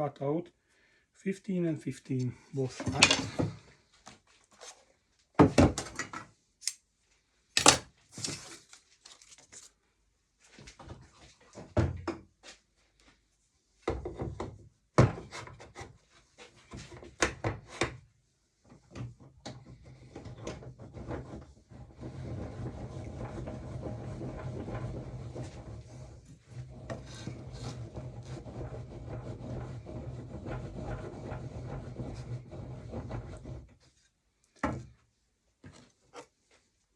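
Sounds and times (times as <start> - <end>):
wooden knocks and clatters: 2.8 - 4.2
steady rough woodworking noise: 19.5 - 34.9.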